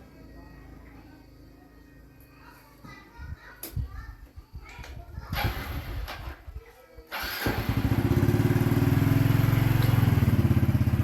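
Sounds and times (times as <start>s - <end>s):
small motorcycle engine idling: 5.3s - 11.0s.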